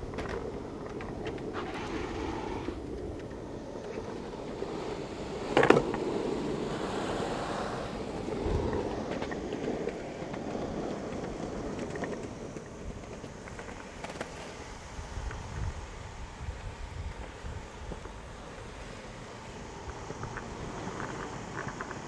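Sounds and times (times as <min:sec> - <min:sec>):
longboard wheels rolling on asphalt: 0:00.0 - 0:22.0.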